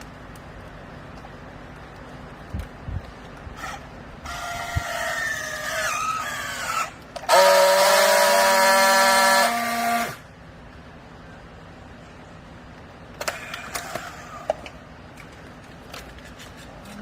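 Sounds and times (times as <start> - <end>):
hydraulic pump whining: 3.6 - 10.3.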